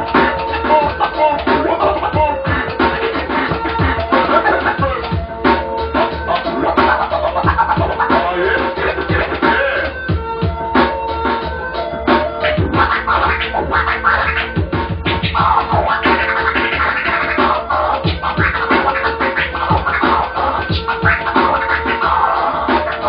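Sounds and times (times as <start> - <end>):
record scratching: 0.0 - 10.2, 12.0 - 23.0
background music: 0.0 - 23.0.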